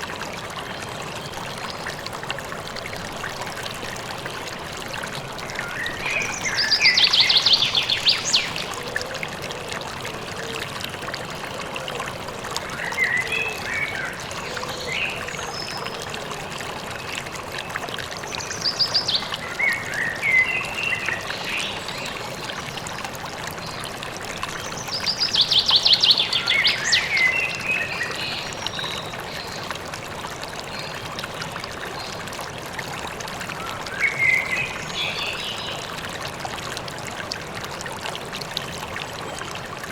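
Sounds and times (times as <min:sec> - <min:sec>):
river water flowing: 0:00.0 - 0:39.9
songbirds singing: 0:05.5 - 0:08.8, 0:24.5 - 0:29.7, 0:33.6 - 0:36.0.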